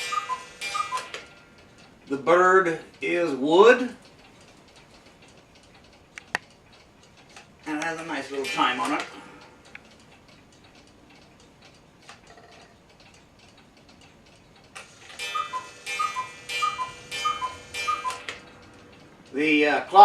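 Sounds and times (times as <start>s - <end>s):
two-note cuckoo calls: 0.0s - 1.3s, 15.2s - 18.5s
clock ticking: 0.0s - 20.0s.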